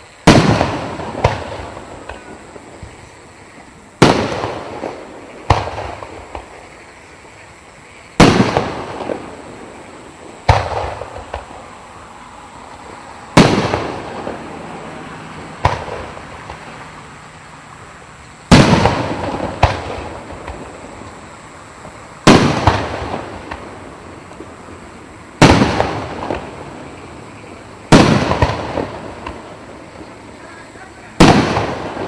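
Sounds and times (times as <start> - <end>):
fireworks bangs: 0.0 - 32.0.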